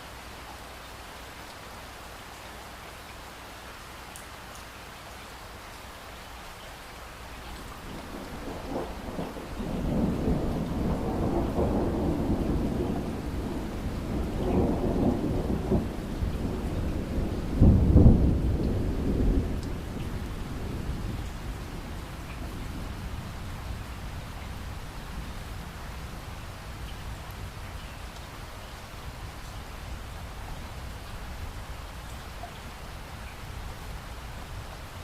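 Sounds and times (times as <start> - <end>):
light rain falling: 0.0 - 35.0
distant thunder rumbling: 7.6 - 27.8.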